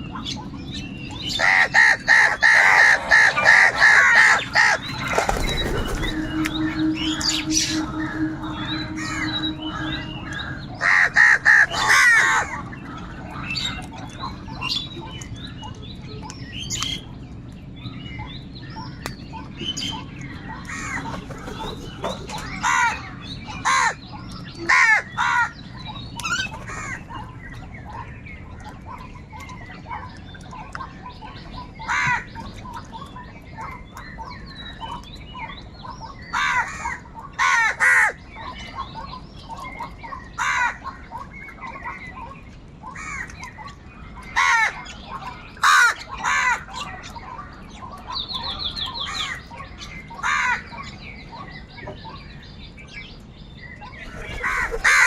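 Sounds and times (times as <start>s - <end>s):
small birds chirping: 0.0s - 55.0s
crows cawing: 1.4s - 12.6s, 36.4s - 38.2s, 40.4s - 40.8s, 44.4s - 44.8s, 45.6s - 46.7s, 50.2s - 50.7s, 54.4s - 55.0s.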